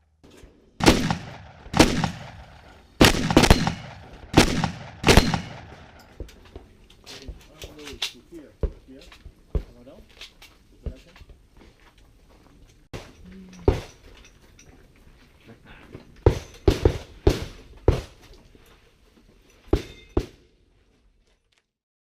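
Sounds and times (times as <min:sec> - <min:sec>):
shotgun shots: 0:00.8 - 0:06.2, 0:16.3 - 0:18.2.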